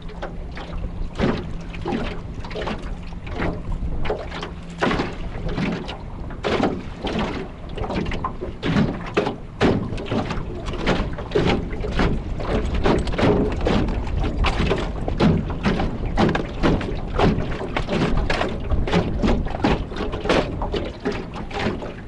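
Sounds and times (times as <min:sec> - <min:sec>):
choppy waves slapping a boat: 0:00.0 - 0:22.0
wind buffeting microphone: 0:00.0 - 0:22.0.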